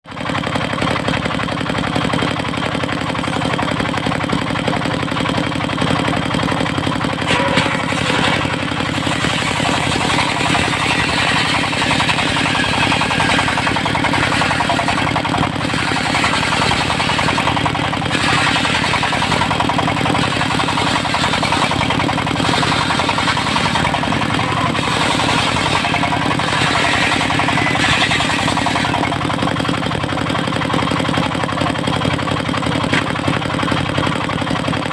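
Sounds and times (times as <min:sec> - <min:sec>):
sawmill engine running: 0:00.1 - 0:34.9
saw blade cutting wood: 0:03.2 - 0:29.9, 0:32.9 - 0:33.4.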